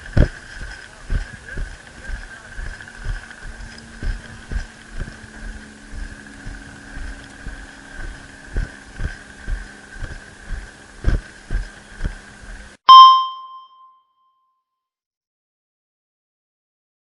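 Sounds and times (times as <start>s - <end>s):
footsteps thumping camera: 0.0s - 12.8s
high-pitched hum: 0.0s - 14.0s.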